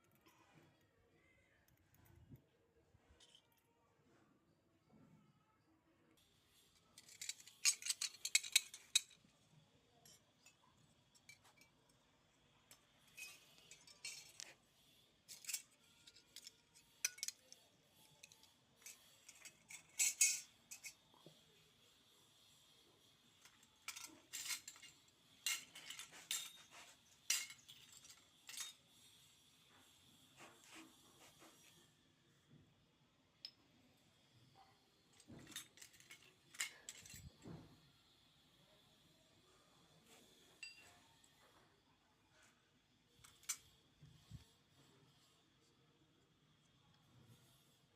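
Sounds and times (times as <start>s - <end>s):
toy kitchen pieces clicking: 6.7s - 9.3s, 12.7s - 14.6s, 15.2s - 21.2s, 23.4s - 29.1s, 35.1s - 37.4s, 43.2s - 43.8s.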